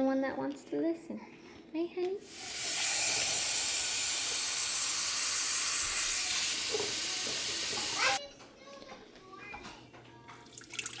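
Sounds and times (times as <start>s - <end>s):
water running from a tap: 2.2s - 8.2s, 10.5s - 11.0s.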